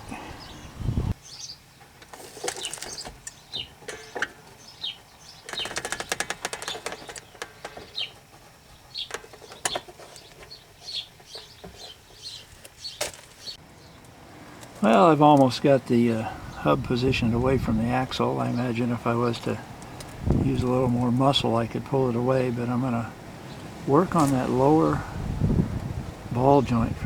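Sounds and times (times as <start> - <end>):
small birds chirping: 0.0 - 27.0
hand tool clicking and rattling: 5.4 - 8.4.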